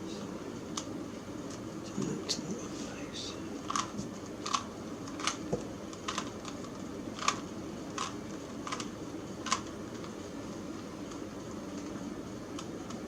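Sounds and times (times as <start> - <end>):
plastic puzzle cube clicking: 7.2 - 7.4, 8.0 - 9.7.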